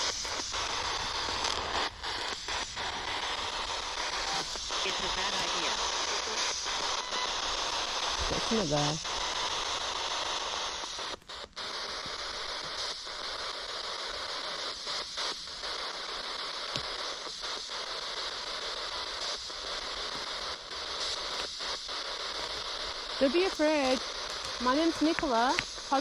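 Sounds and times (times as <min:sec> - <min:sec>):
radio scanner static hiss: 0:00.0 - 0:26.0.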